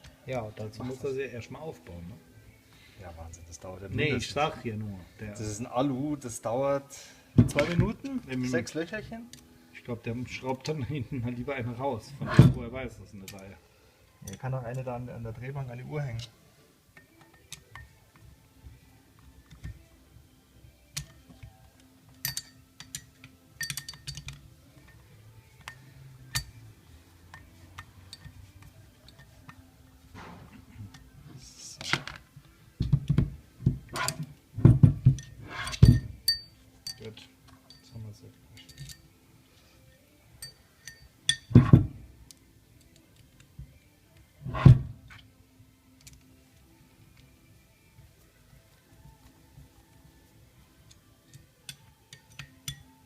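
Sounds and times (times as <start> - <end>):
metallic clinks of hand tools: 22.1 - 26.6, 35.1 - 39.2, 40.4 - 41.6, 50.8 - 53.0.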